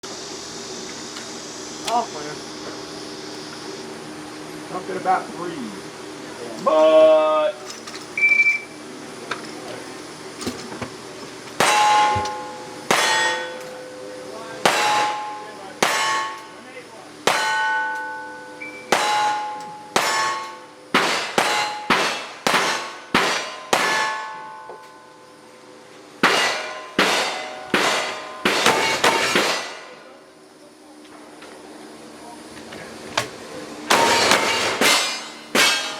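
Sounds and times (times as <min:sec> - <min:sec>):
steel target clanging: 0:11.6 - 0:25.2, 0:26.2 - 0:30.0, 0:33.9 - 0:35.9.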